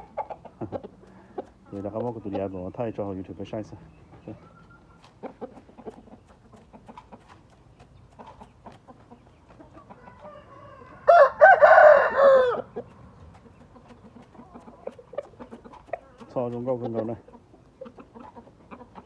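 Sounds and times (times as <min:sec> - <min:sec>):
rooster crowing: 0:10.0 - 0:12.7
faint clucking: 0:12.7 - 0:19.0.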